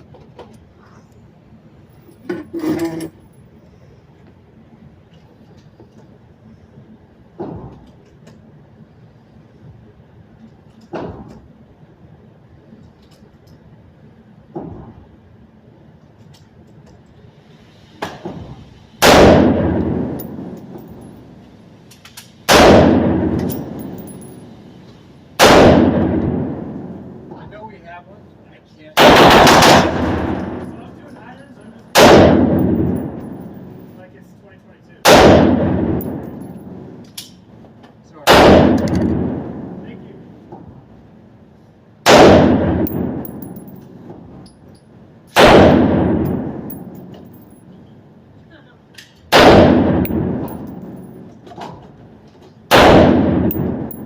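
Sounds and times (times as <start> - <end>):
rifle shots echoing: 19.0 - 21.0, 22.5 - 24.3, 25.4 - 27.0, 29.0 - 30.6, 32.0 - 33.7, 35.0 - 36.9, 38.3 - 39.8, 42.1 - 43.8, 45.4 - 47.4, 49.3 - 51.0, 52.7 - 54.0.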